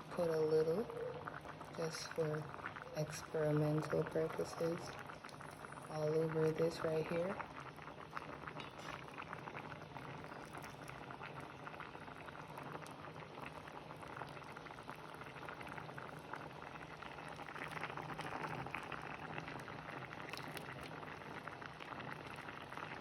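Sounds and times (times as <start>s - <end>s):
sauce simmering with small pops: 0.0s - 23.0s.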